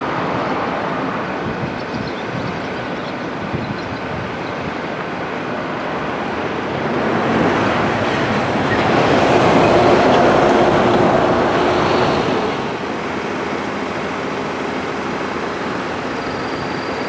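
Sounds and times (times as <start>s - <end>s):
passing vehicle rumble: 6.7s - 17.0s.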